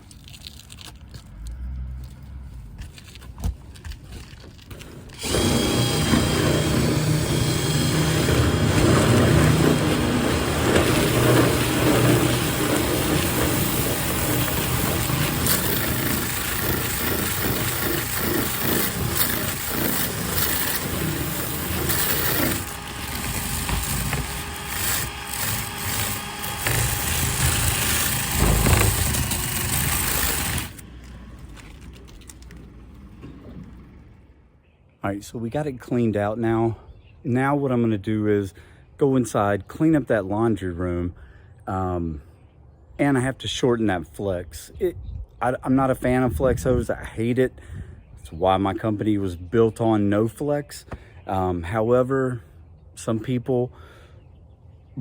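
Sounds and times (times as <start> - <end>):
power drill spinning duct brush: 2.8 - 34.3.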